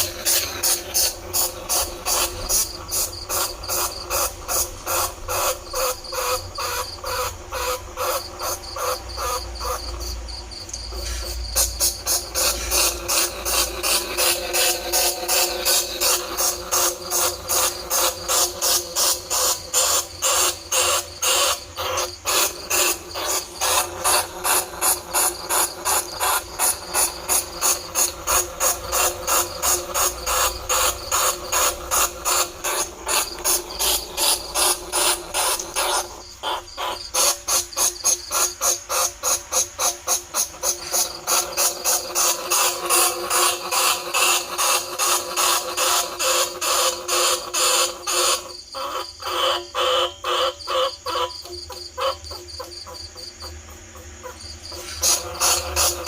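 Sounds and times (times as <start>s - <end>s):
sharp raspy squeaks: 0.0s - 56.0s.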